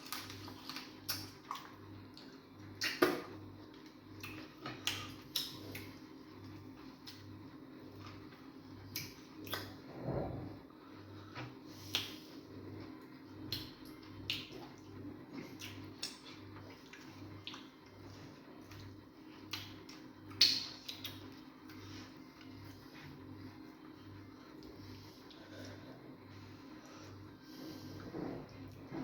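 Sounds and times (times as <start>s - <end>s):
mouths chewing with wet smacks: 0.0s - 7.3s, 11.8s - 23.0s
faint steady hum: 0.0s - 29.0s.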